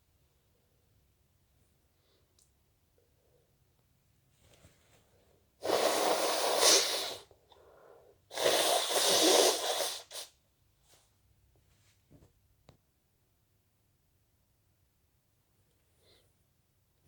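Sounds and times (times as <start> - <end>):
person sneezing: 5.6 - 7.3, 8.3 - 10.3
person sniffing: 5.6 - 10.4
person breathing: 7.5 - 9.0.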